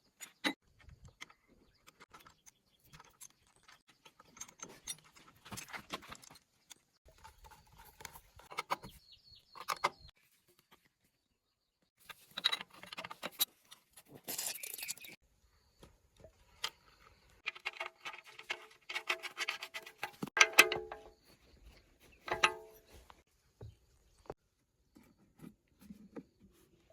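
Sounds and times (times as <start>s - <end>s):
metal tools clinking and rattling: 2.1s - 6.4s, 17.4s - 21.2s, 22.3s - 23.1s.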